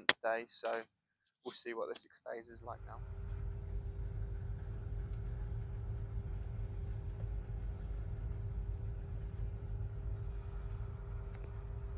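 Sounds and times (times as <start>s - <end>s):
mid-pitched hum: 2.4s - 11.9s
combine harvester rumble: 2.6s - 11.9s.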